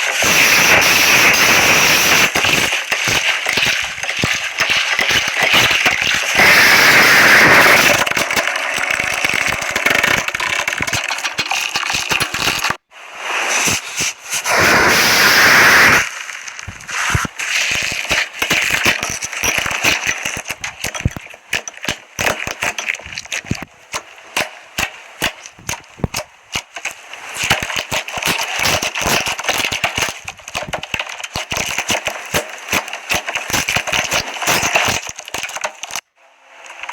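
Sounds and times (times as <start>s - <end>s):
slime crackling and popping: 0.0s - 12.9s, 14.5s - 36.1s
hissing squelch of slime: 13.0s - 18.2s.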